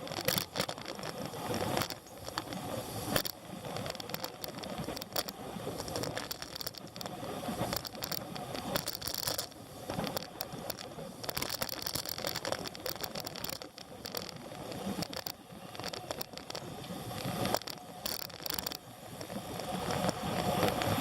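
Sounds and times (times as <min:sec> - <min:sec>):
rattling and clicking: 0:03.2 - 0:07.1, 0:07.7 - 0:16.6, 0:17.4 - 0:18.8.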